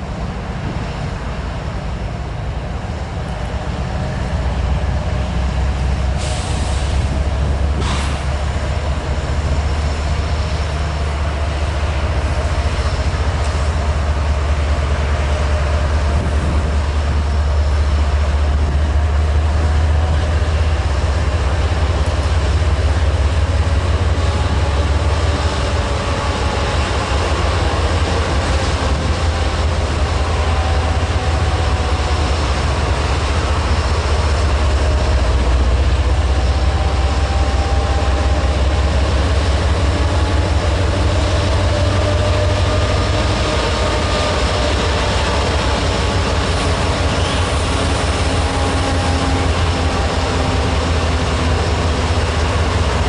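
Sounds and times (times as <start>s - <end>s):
freight train rumbling past: 0.0s - 53.0s.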